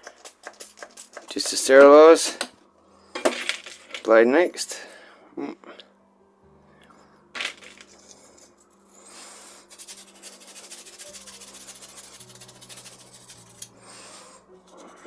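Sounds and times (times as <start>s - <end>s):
rubbing strokes on secateur blade: 9.6s - 13.7s.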